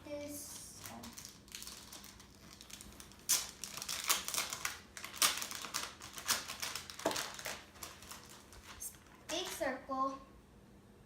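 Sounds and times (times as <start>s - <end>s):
plastic packaging crinkling: 0.7s - 9.6s.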